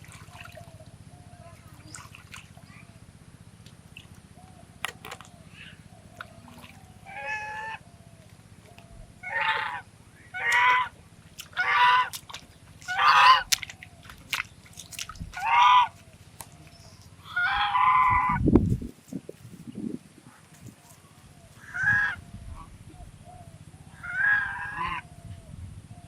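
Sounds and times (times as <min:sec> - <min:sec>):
swan honking calls: 0:04.8 - 0:08.0, 0:08.6 - 0:14.1, 0:15.3 - 0:18.4, 0:21.5 - 0:22.7, 0:23.9 - 0:25.1.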